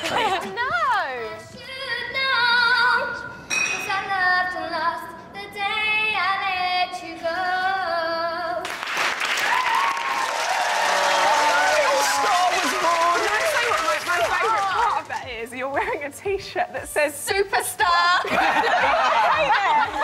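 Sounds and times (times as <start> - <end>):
girl singing with vibrato: 0.4 - 8.6.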